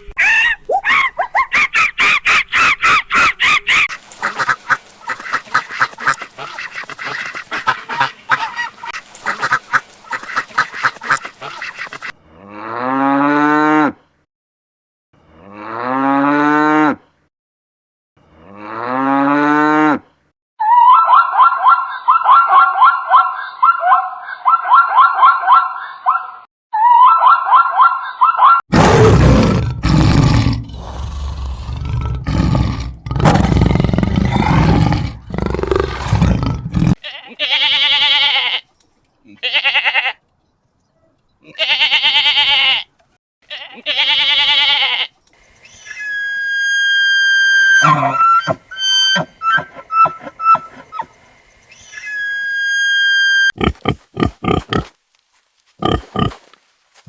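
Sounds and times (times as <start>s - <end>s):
high drawn-out animal calls: 0.0s - 12.2s, 20.6s - 29.1s, 43.5s - 54.9s, 55.8s - 56.4s
short animal calls and clicks: 3.7s - 12.1s, 45.3s - 54.9s
low animal roar: 28.7s - 37.0s, 46.8s - 51.1s.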